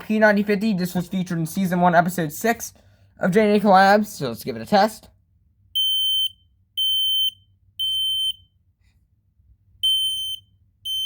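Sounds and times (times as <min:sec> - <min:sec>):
smoke alarm beeping: 0:05.8 - 0:08.6, 0:09.8 - 0:11.0.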